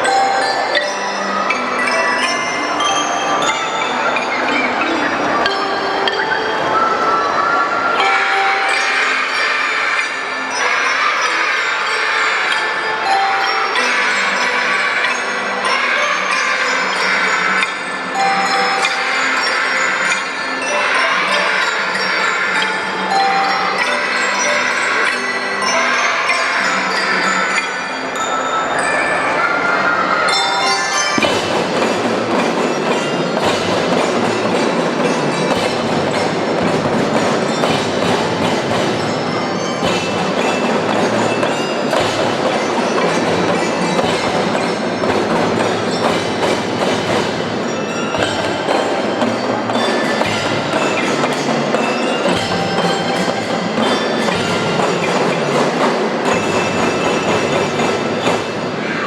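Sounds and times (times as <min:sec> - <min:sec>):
bell-lyres ringing a melody: 0:00.0 - 0:59.0
drum strokes: 0:30.3 - 0:58.8
marching band playing: 0:30.3 - 0:58.8.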